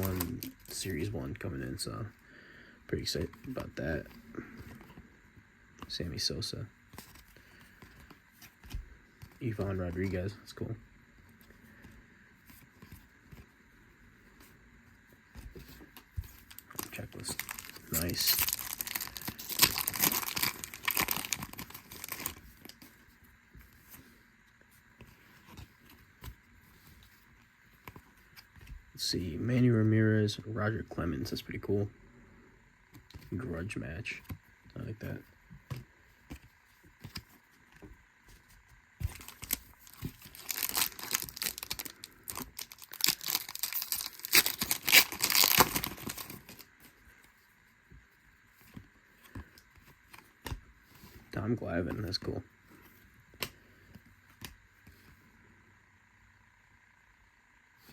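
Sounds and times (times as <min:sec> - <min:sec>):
wrapper tearing and crinkling: 0:00.0 - 0:00.8, 0:16.5 - 0:22.8, 0:39.2 - 0:46.6.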